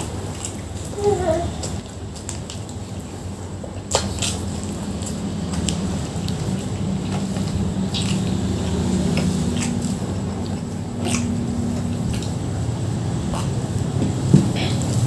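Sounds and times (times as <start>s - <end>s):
steady low hum: 0.0s - 15.0s
chewing mouth clicks and smacks: 3.8s - 12.5s, 13.3s - 13.9s.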